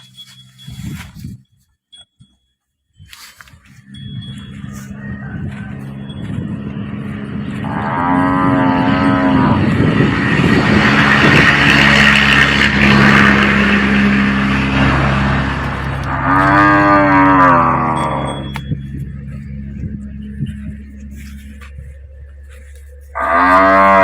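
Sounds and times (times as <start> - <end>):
steady low hum: 3.8 - 24.0
cattle mooing loudly: 6.8 - 18.6, 23.1 - 24.0.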